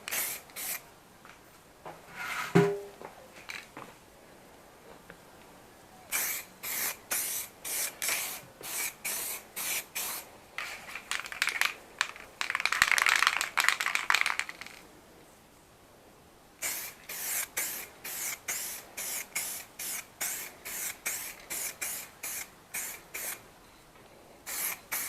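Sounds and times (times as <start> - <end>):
aerosol can spraying: 0.1 - 0.8, 6.1 - 10.3, 16.6 - 23.4, 24.5 - 25.0.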